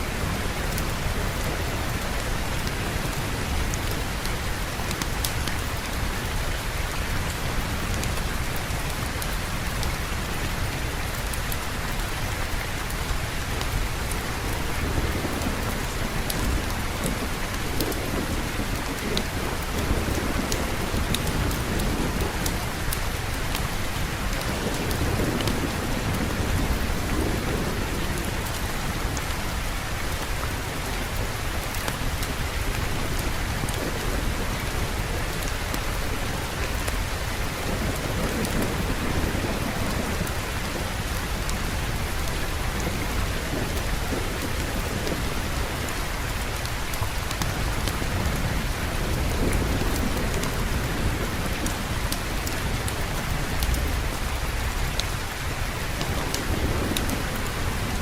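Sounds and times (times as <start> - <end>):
heavy rainfall: 0.0 - 58.0
rolling thunder rumble: 13.7 - 58.0.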